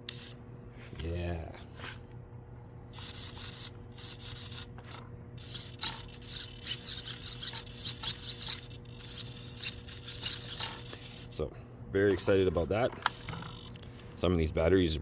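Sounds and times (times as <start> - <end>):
steady low hum: 0.0 - 15.0
rubbing and scraping: 4.4 - 11.2.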